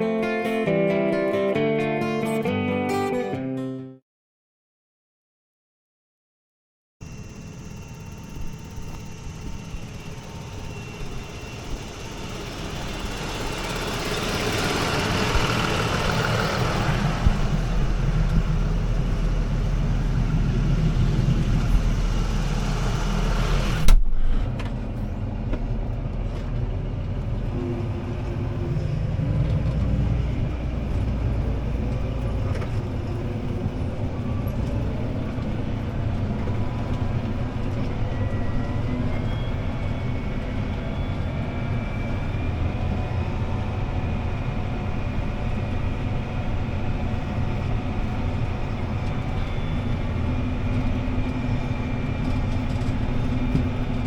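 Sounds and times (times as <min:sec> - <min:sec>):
tractor diesel engine under load: 0:08.2 - 0:54.0
sharp clunk: 0:23.8 - 0:24.6.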